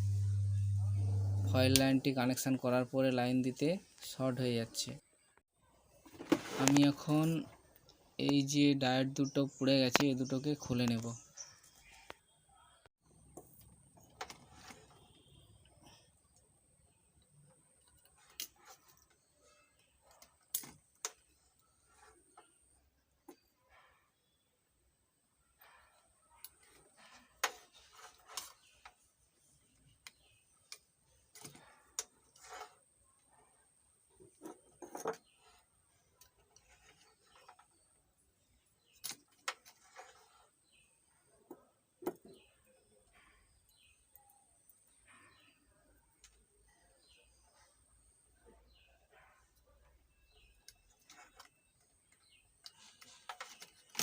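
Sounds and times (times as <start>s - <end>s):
hand tools clicking and snapping: 20.1s - 21.2s.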